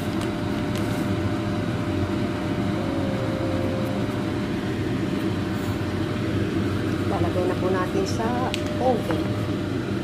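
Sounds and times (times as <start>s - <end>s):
low machine hum: 0.0s - 10.0s
faint brief tone: 2.8s - 4.1s.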